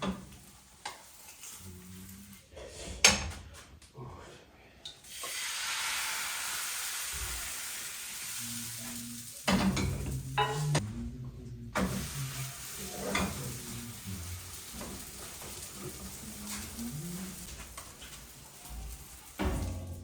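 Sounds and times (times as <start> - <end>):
batter sizzling in frying pan: 0.0 - 2.4, 5.0 - 10.8, 11.8 - 20.0
utensils knocking and clattering: 9.5 - 10.8.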